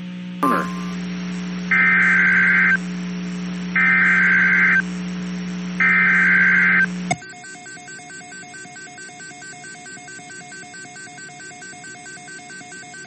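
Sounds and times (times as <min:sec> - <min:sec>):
steady low hum: 0:00.1 - 0:07.2.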